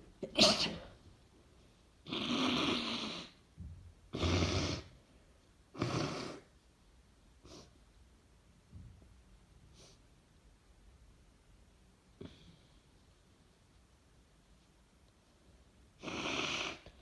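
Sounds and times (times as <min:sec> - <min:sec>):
faint sniffs: 0:07.4 - 0:07.8, 0:09.6 - 0:10.1.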